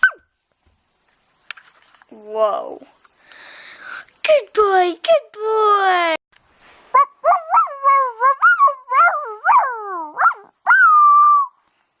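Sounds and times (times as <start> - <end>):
dog howling: 7.0 - 11.5.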